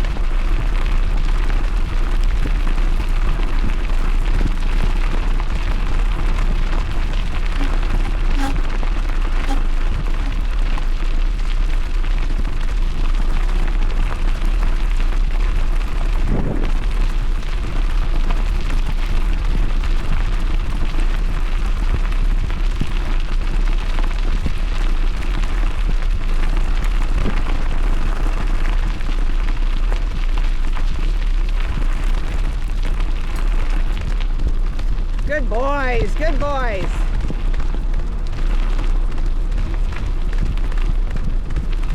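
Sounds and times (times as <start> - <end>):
rolling trail noise: 0.0 - 41.9
wind buffeting microphone: 15.8 - 29.1.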